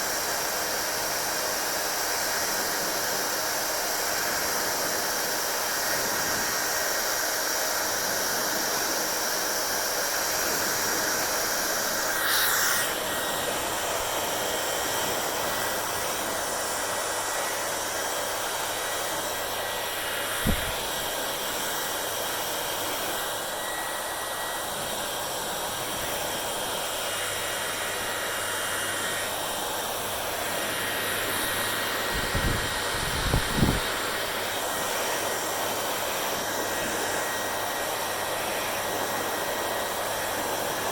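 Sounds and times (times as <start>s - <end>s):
hair dryer blowing: 0.0s - 40.9s.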